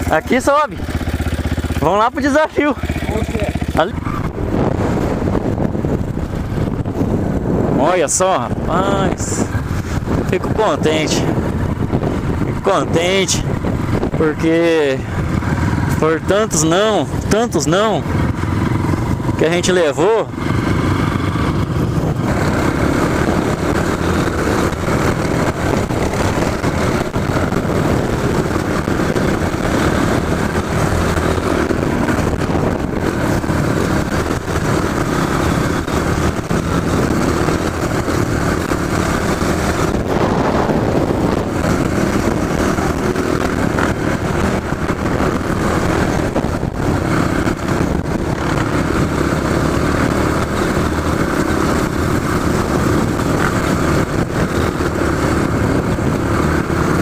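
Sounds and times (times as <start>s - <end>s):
motorcycle engine running: 0.0s - 57.0s.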